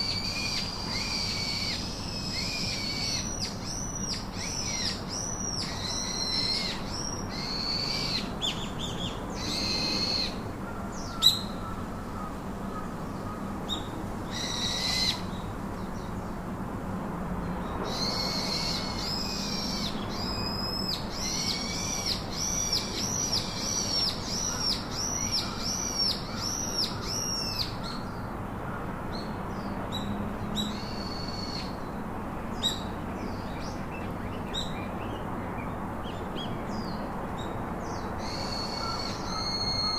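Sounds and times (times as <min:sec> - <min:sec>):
steady background hiss: 0:00.0 - 0:39.9.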